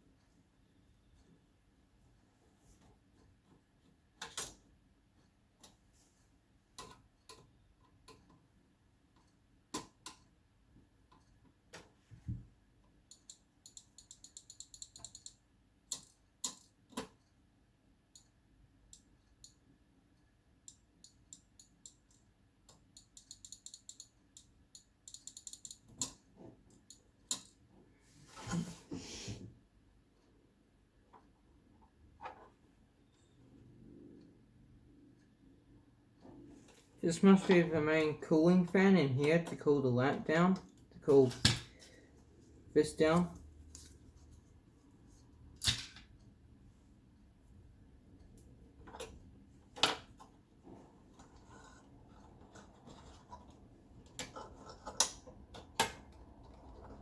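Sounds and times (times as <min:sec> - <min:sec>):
tools and plastic parts clicking: 0:20.7 - 0:27.6
scrape: 0:28.0 - 0:29.5.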